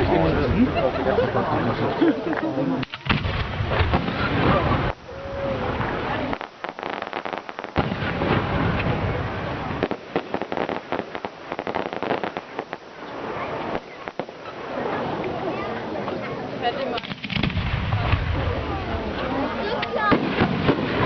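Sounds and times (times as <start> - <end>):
fireworks crackling and popping: 2.3 - 15.5, 16.7 - 21.0
loud firework bang: 2.8 - 5.0, 6.7 - 12.4, 17.0 - 18.6, 20.1 - 21.0.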